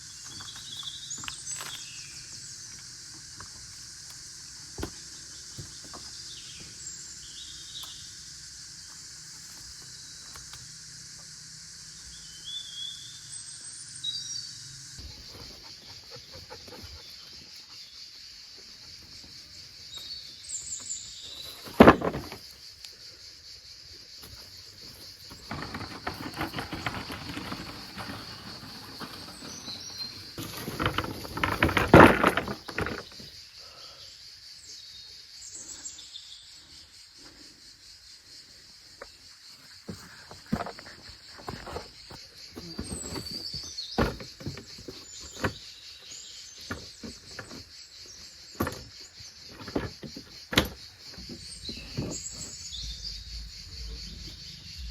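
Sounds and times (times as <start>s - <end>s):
bird chirps: 0.0s - 22.8s, 39.5s - 54.9s
insects buzzing: 0.0s - 54.9s.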